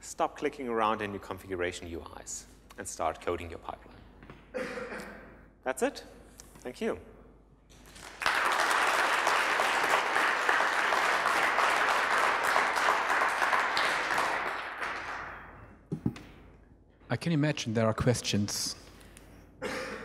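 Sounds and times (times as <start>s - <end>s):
audience applauding: 7.8s - 15.5s.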